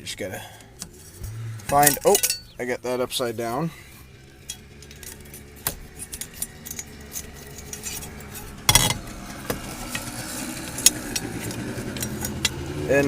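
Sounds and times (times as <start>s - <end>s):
metal parts clattering: 0.8s - 2.6s, 4.4s - 9.0s
small metal parts clicking and clinking: 0.8s - 2.6s, 4.3s - 9.0s, 10.8s - 12.6s.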